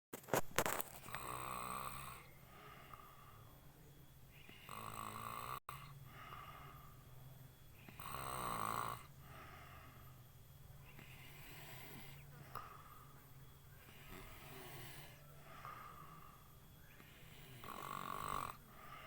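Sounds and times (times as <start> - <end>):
man snoring: 0.9 - 19.0.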